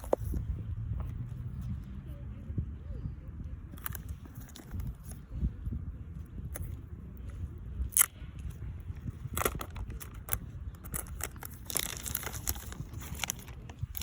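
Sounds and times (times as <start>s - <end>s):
packaging crinkling and tearing: 9.3s - 14.0s.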